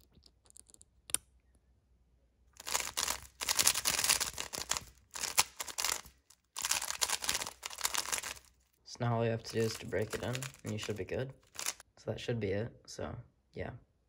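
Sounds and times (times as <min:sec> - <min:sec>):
plastic puzzle cube turning clatter: 0:02.6 - 0:08.5, 0:09.5 - 0:11.8.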